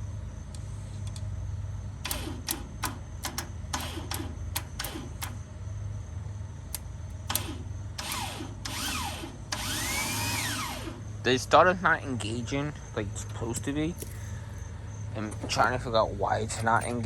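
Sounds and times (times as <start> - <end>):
steady low hum: 0.0 - 17.0
starter clicking: 2.0 - 5.5, 6.7 - 11.1, 15.2 - 17.0
starter spinning whine: 2.0 - 5.5, 6.7 - 11.9.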